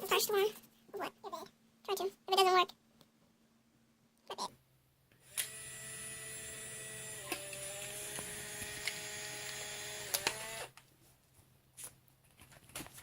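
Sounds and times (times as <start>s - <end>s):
camera motor whining: 5.2s - 10.7s.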